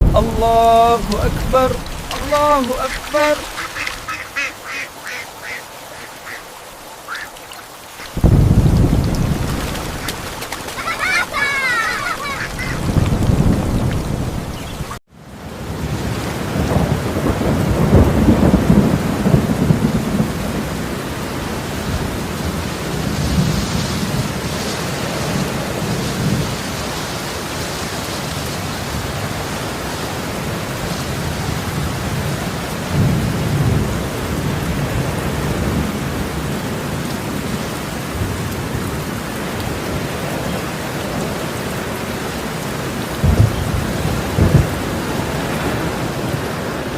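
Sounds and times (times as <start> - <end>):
thunder rumbling: 0.0 - 4.5, 8.1 - 15.0, 15.6 - 24.5, 43.2 - 46.9
heavy rain falling: 0.0 - 46.9.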